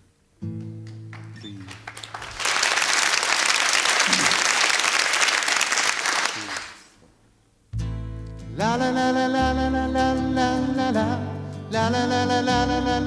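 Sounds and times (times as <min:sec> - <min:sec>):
audience applauding: 0:00.8 - 0:07.0.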